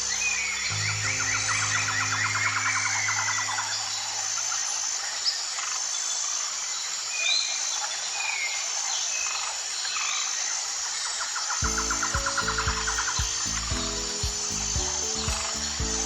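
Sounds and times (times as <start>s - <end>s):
low music tones: 0.0s - 4.9s, 11.6s - 16.0s
insects chirping: 0.0s - 16.0s.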